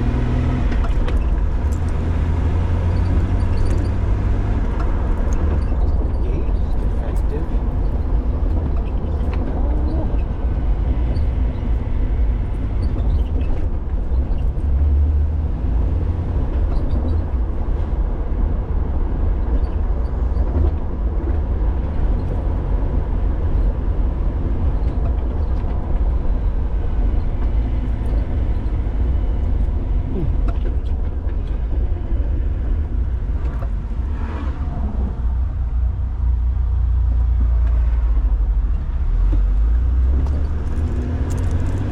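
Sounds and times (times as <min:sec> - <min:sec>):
car engine rumble: 0:00.0 - 0:41.9
road noise: 0:00.0 - 0:41.9.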